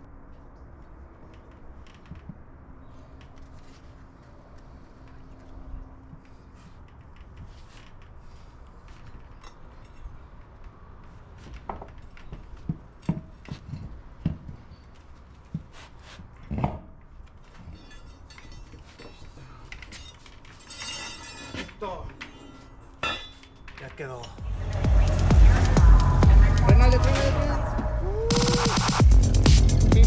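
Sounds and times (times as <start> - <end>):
hand tools clinking on metal: 17.6 - 24.4.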